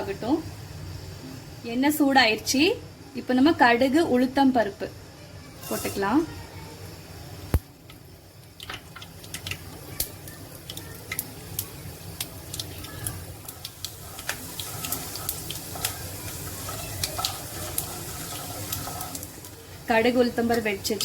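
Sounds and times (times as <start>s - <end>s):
seeds sizzling and popping in oil: 5.6s - 21.0s.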